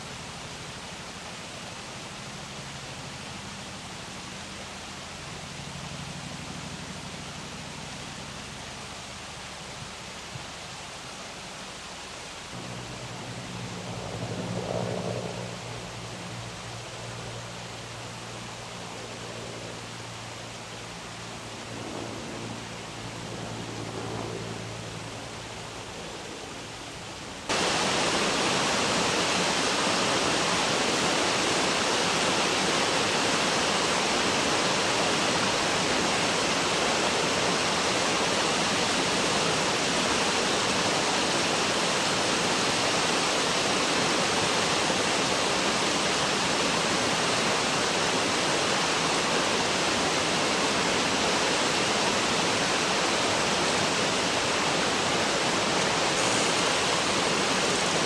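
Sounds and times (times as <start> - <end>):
river water rushing over a step: 27.5 - 58.0.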